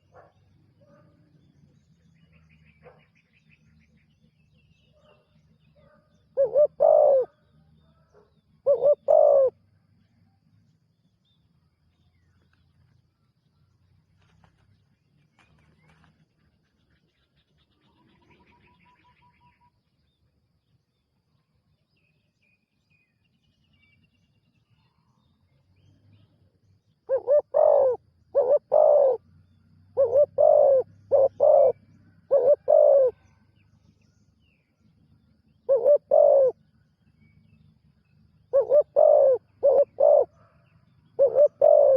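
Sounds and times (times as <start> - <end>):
dove cooing: 5.8 - 7.4, 8.6 - 9.6, 27.0 - 29.2, 29.9 - 33.3, 35.7 - 36.6, 38.5 - 40.6, 41.2 - 41.9.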